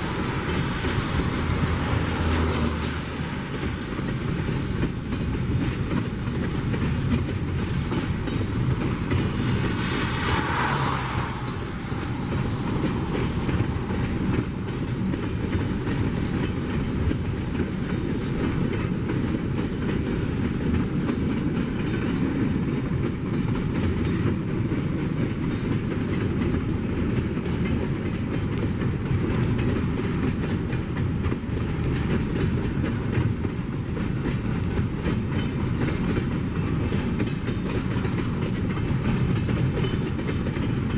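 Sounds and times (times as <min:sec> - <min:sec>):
freight train rumbling past: 0:00.0 - 0:40.9
wheels clacking over rail joints: 0:00.0 - 0:40.9
brief high hiss: 0:09.4 - 0:13.4.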